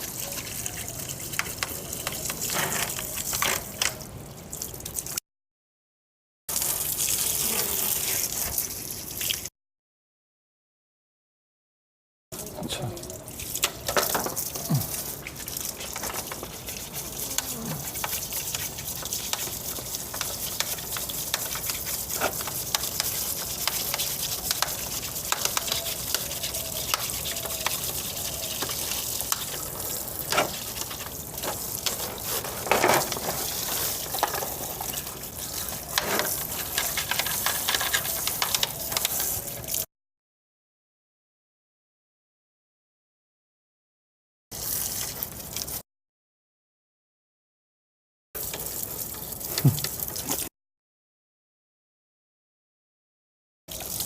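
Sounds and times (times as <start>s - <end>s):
water splashing on plastic grille: 13.3s - 39.8s.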